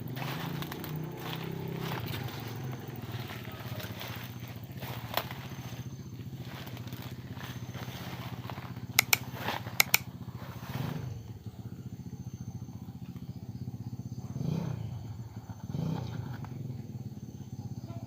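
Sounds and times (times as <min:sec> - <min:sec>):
small engine idling: 0:00.0 - 0:18.0
sharp clicks: 0:08.9 - 0:10.1.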